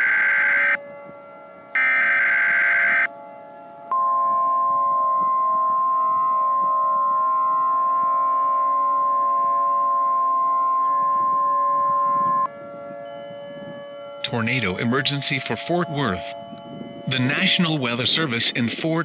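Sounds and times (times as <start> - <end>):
steady high alert tone: 1.8 - 3.1, 14.2 - 19.0.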